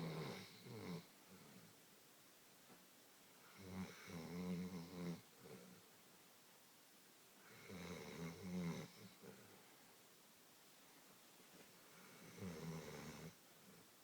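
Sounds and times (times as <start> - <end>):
dog snoring: 0.0 - 1.1, 3.5 - 5.7, 7.5 - 9.3, 12.0 - 13.4.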